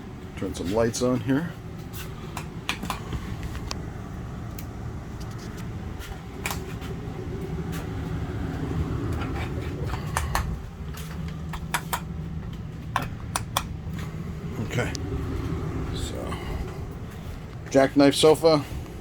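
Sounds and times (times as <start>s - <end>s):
air conditioner humming: 0.0s - 19.0s
light clicks and taps: 9.1s - 14.1s.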